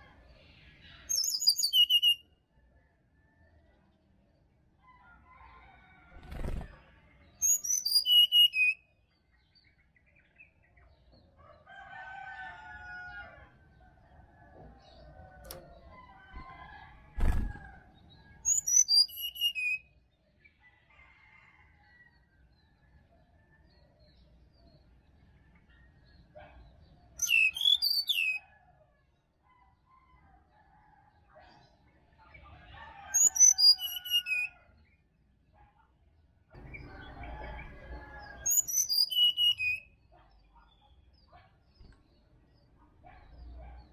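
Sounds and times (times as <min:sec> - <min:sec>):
bird whistled song: 0:01.0 - 0:02.3, 0:07.4 - 0:08.9, 0:18.4 - 0:20.0, 0:27.2 - 0:28.4, 0:33.2 - 0:34.6, 0:38.4 - 0:40.0.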